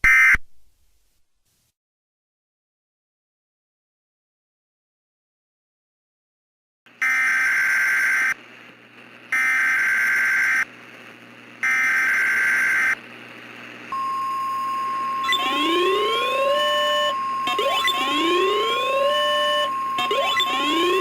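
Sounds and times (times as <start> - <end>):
screeching digital data tones: 13.9 - 21.0
steady alarm tone: 13.9 - 21.0
rising sweeping tones: 14.0 - 21.0.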